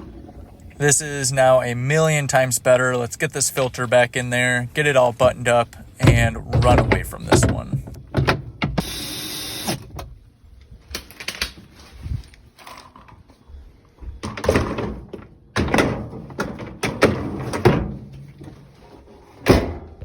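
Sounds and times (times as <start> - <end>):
dishwasher parts clunking: 6.0 - 8.8.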